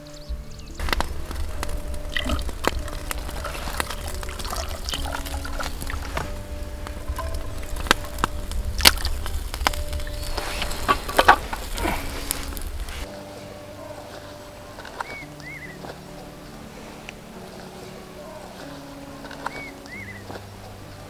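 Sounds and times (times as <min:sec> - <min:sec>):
background music with held notes: 0:00.0 - 0:21.0
water pouring and sloshing: 0:00.5 - 0:13.3.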